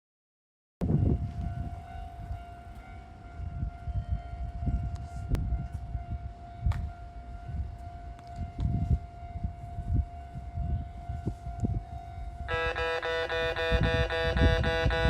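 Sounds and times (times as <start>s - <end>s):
level crossing alarm tone: 9.1s - 15.0s.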